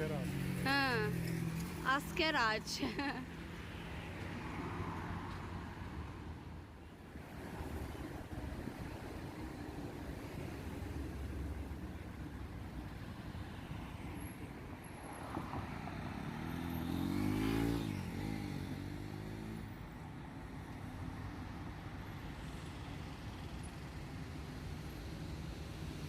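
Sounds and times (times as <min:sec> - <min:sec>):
road traffic rumble: 0:00.0 - 0:26.0
vehicle engine passing close: 0:15.9 - 0:19.8.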